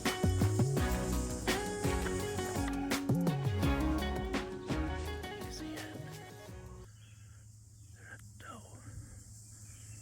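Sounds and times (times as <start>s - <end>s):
background music with plucked strings: 0.0s - 6.8s.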